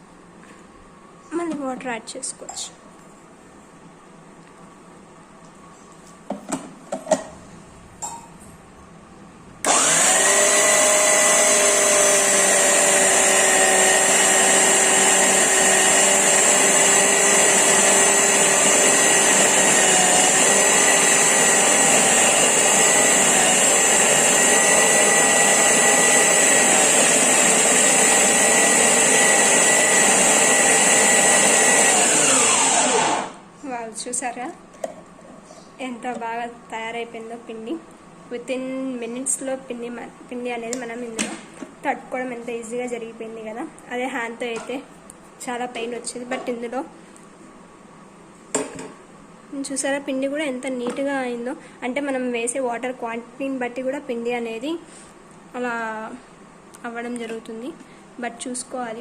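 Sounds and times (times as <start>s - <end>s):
mixer grinder motor whining: 9.6s - 33.4s.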